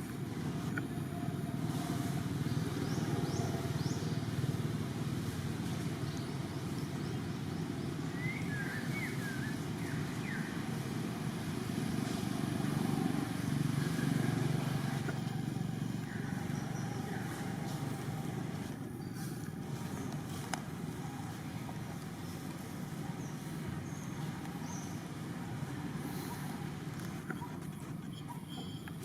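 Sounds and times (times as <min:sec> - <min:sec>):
low outdoor rumble: 0:00.0 - 0:29.0
faint high chirps: 0:27.2 - 0:29.0.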